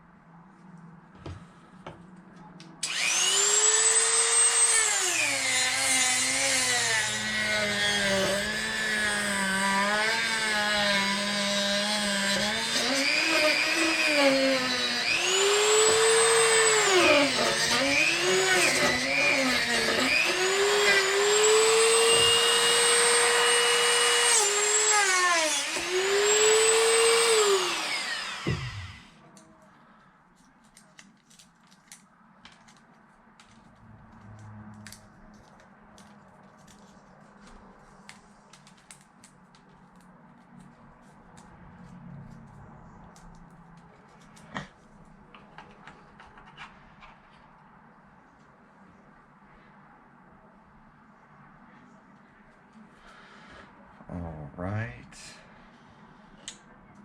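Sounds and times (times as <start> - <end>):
rotary tool cutting: 2.8 - 29.1.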